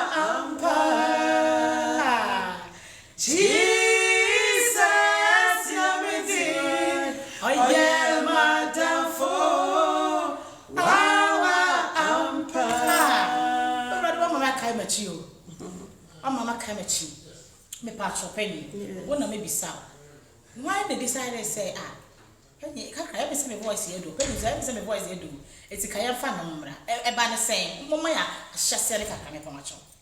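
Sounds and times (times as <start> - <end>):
women singing in harmony: 0.0 - 14.8.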